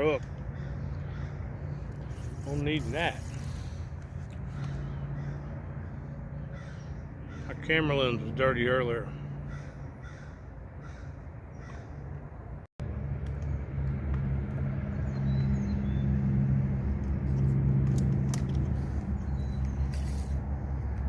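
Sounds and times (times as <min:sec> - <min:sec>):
steady low hum: 0:00.0 - 0:21.0
crows cawing: 0:00.5 - 0:02.3, 0:04.4 - 0:07.6, 0:09.1 - 0:12.0.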